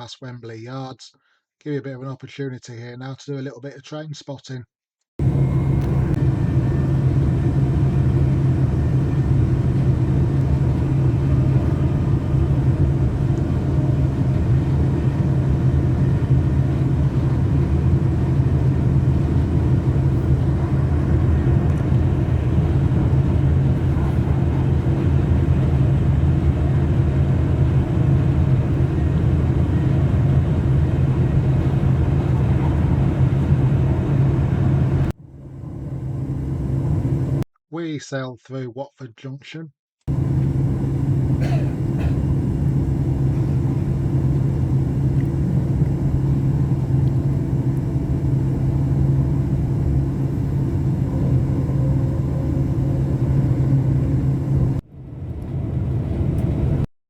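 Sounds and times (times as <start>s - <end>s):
train wheels rumbling on rail: 5.2s - 35.1s
constant hum: 5.2s - 37.4s, 40.1s - 56.9s.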